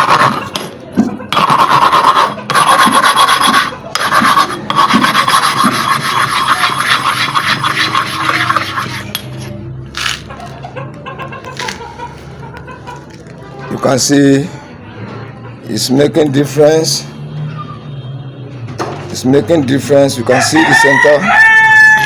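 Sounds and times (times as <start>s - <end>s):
stone rasping on stone: 0.0s - 0.7s, 1.3s - 9.5s.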